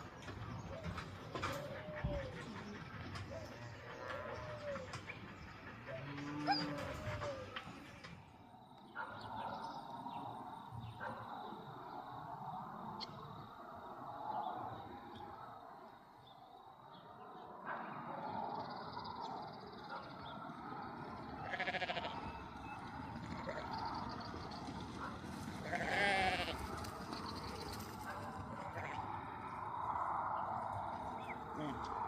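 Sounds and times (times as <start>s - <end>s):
sheep bleating: 21.4s - 22.3s, 25.6s - 26.7s.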